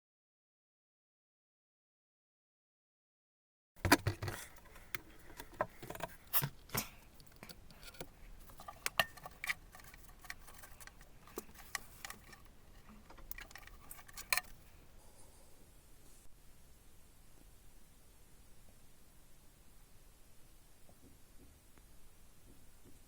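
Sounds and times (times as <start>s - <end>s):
handling clicks and taps: 3.8s - 14.6s.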